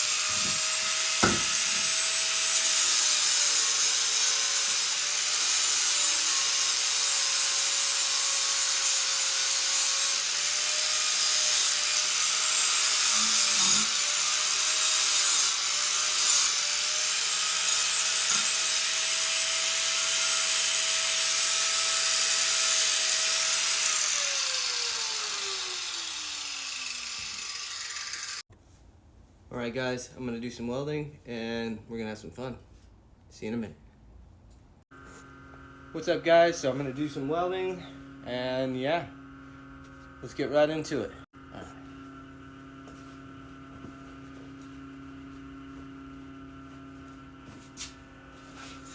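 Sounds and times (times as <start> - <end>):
power sander sanding metal: 0.0 - 28.4.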